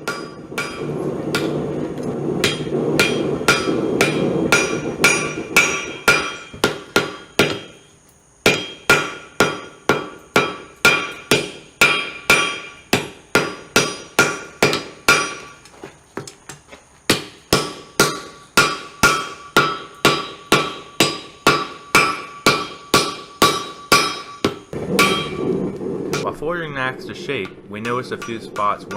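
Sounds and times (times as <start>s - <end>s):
hammer ringing on anvil: 0.0s - 0.8s, 17.6s - 25.5s.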